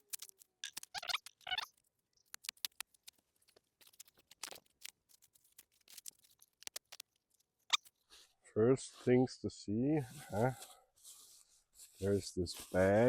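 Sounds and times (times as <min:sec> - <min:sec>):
packaging wrap crinkling: 0:00.0 - 0:07.9.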